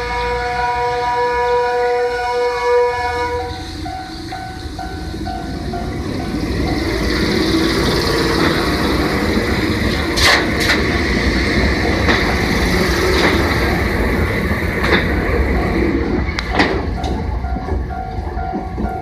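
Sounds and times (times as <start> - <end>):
electric train rumbling: 0.0 - 19.0
wheels clicking over rails: 5.2 - 19.0.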